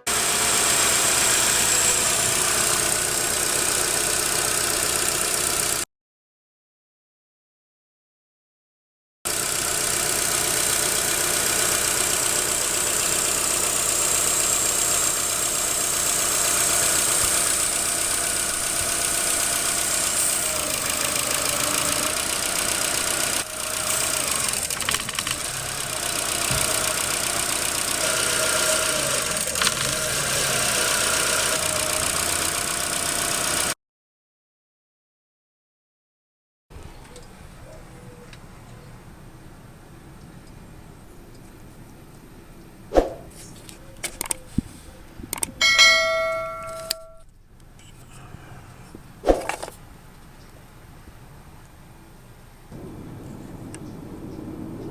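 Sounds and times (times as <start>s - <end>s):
car engine idling: 0.0s - 5.8s, 9.3s - 33.7s, 45.8s - 54.9s
sharp clicks: 45.3s - 45.6s.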